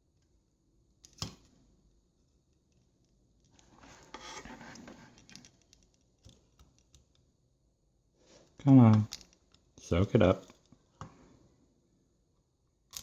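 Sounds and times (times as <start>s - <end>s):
scratching and rubbing: 3.6s - 5.4s.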